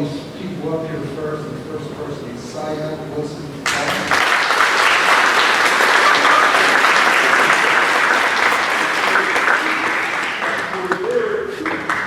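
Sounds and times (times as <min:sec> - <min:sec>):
audience applauding: 0:03.6 - 0:12.0.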